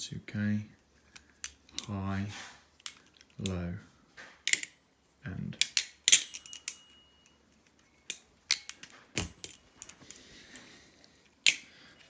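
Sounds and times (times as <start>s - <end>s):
butterfly knife clacking: 11.4s - 11.7s.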